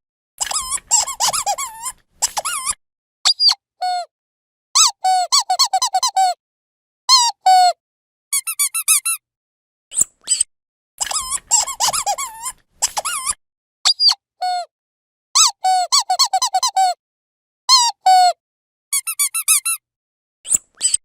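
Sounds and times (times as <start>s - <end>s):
squeaky dog toy squeaking: 0.4s - 4.1s, 4.8s - 6.4s, 7.1s - 9.2s, 10.2s - 14.7s, 15.4s - 17.0s, 17.7s - 19.8s, 20.5s - 21.0s.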